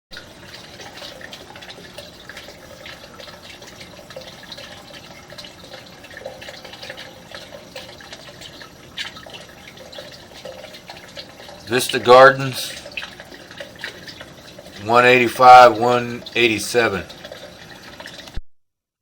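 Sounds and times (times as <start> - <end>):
water trickling and dripping: 0.1 - 18.4
small water splashes: 0.2 - 16.4.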